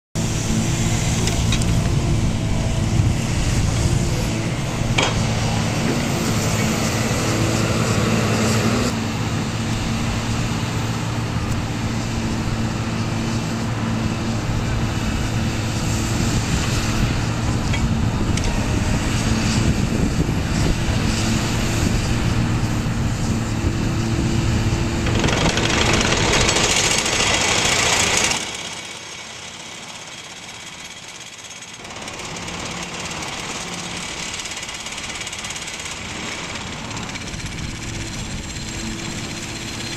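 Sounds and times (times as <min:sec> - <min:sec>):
pile driver rattling: 0:24.8 - 0:29.1.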